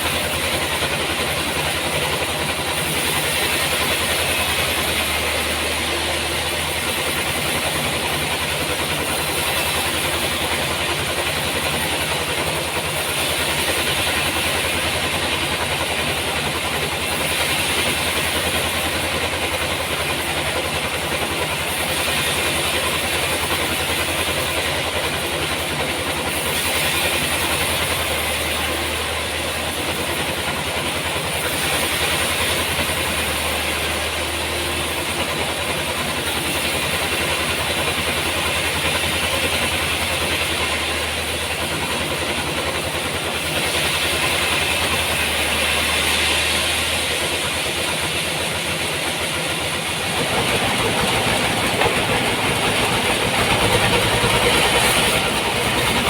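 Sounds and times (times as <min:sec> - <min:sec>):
saw hissing through log: 0:00.0 - 0:56.0.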